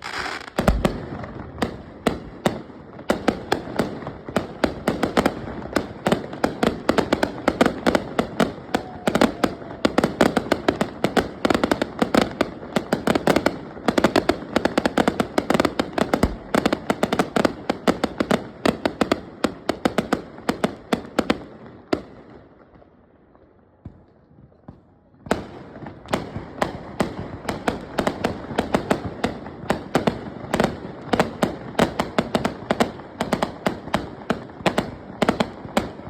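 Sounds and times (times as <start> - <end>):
fireworks bangs and crackling: 0.0 - 36.0.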